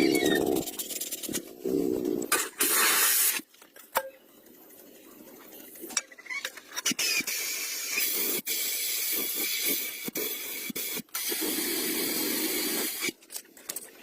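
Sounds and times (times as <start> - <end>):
air hiss: 2.3 - 3.4, 7.0 - 13.1.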